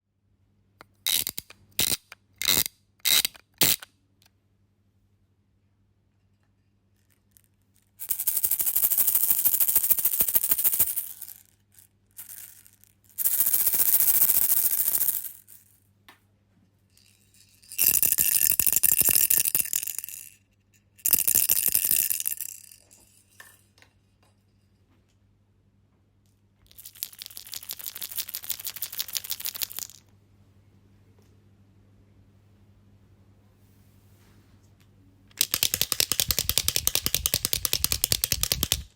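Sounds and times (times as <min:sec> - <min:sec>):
toy rattling: 0:01.1 - 0:03.8, 0:07.0 - 0:15.8, 0:17.0 - 0:20.4, 0:21.0 - 0:23.6, 0:26.7 - 0:30.0, 0:35.3 - 0:38.9.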